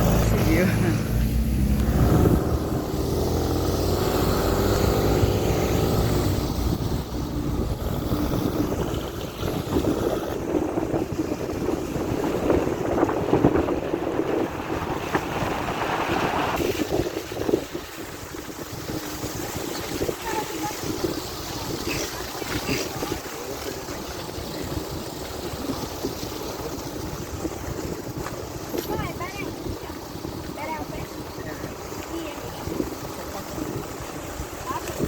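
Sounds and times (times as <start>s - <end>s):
engine running: 0.0s - 35.0s
wind buffeting microphone: 0.0s - 35.0s.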